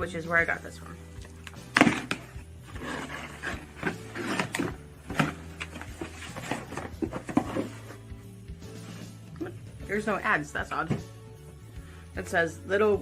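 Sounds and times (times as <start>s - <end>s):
cardboard box being opened: 1.8s - 8.1s.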